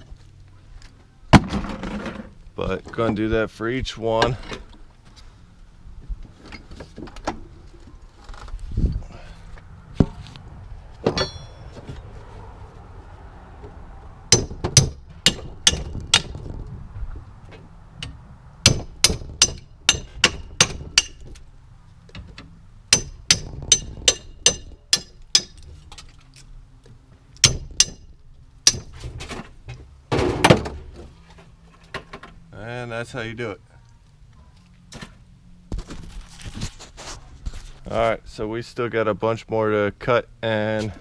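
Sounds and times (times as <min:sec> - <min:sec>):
hammer striking metal tool: 0:11.1 - 0:11.6, 0:14.3 - 0:16.3, 0:18.7 - 0:21.2, 0:22.9 - 0:25.6, 0:27.4 - 0:28.0, 0:28.6 - 0:28.9.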